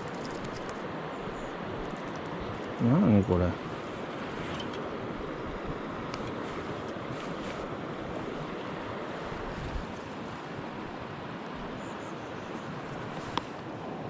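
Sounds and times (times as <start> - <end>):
stream water rushing: 0.0 - 14.0
small click: 13.3 - 13.5.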